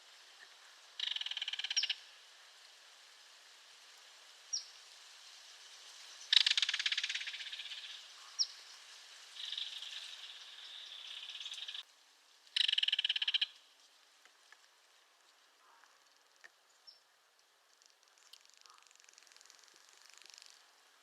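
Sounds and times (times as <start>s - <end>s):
bird trill: 1.0s - 2.0s, 9.4s - 11.8s, 12.6s - 13.6s
kingfisher rattle call: 1.0s - 2.0s, 6.3s - 8.5s, 9.4s - 11.8s, 12.6s - 13.6s.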